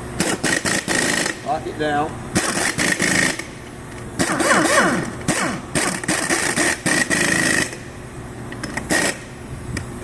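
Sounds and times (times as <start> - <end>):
impact wrench bursts: 0.2 - 1.5, 2.3 - 8.0, 8.6 - 9.4.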